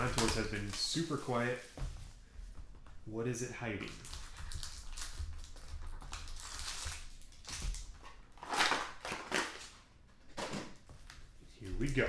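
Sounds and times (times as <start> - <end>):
packaging crinkling and tearing: 0.0 - 1.8, 3.9 - 10.8.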